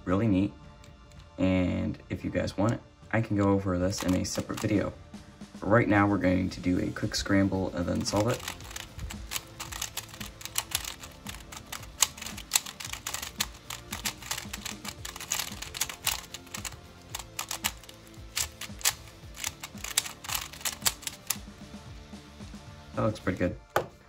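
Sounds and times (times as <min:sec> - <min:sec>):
puzzle cube plastic clicks: 0:03.9 - 0:04.8, 0:07.9 - 0:21.6.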